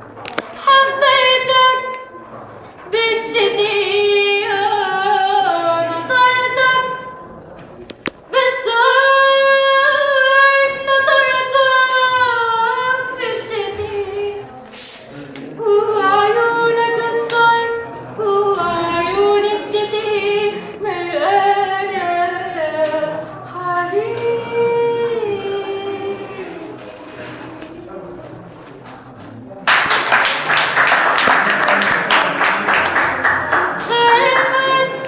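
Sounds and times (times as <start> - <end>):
woman singing unaccompanied: 0.6 - 2.2, 2.9 - 7.2, 8.3 - 14.6, 15.6 - 26.7, 33.8 - 35.0.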